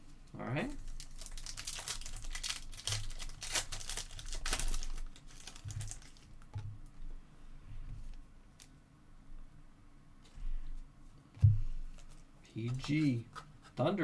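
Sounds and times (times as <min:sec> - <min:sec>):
foil wrapper crinkling and tearing: 0:00.3 - 0:06.5.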